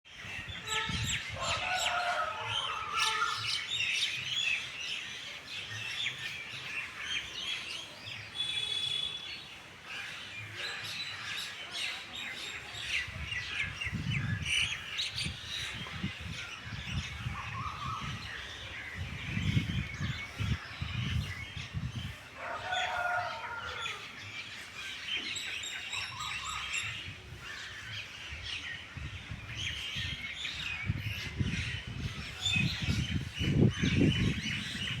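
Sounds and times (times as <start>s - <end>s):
low repeated bird call: 6.1s - 21.8s.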